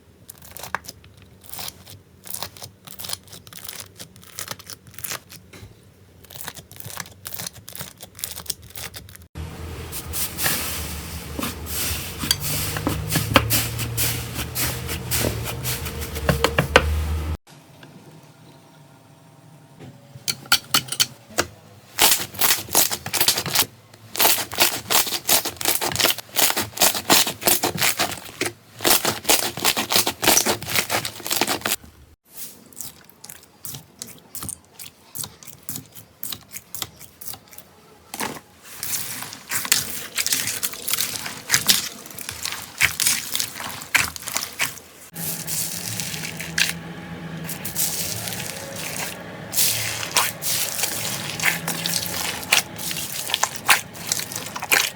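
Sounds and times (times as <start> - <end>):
slime crackling and popping: 38.8 - 46.8, 47.5 - 54.9.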